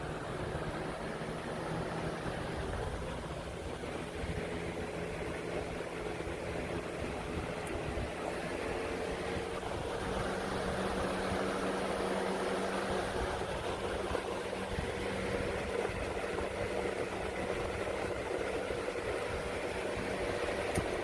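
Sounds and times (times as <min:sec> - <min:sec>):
box fan running: 0:00.0 - 0:21.0.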